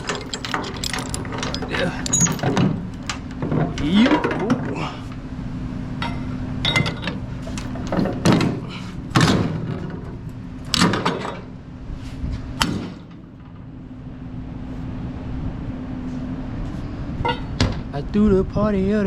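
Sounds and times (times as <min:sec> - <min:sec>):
heavy chain clanking on metal: 0:00.0 - 0:04.8, 0:06.1 - 0:08.8.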